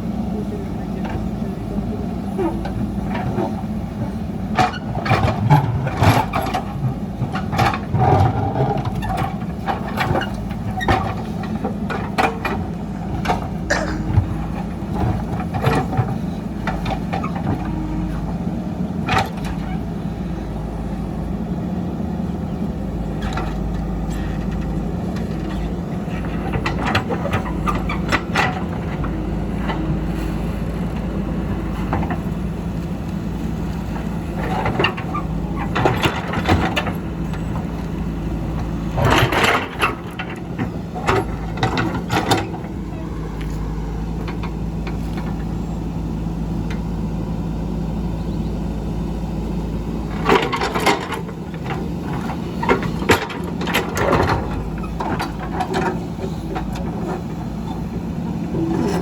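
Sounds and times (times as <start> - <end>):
diesel engine running: 0.0 - 59.0
metal clanks and scrapes: 58.5 - 59.0.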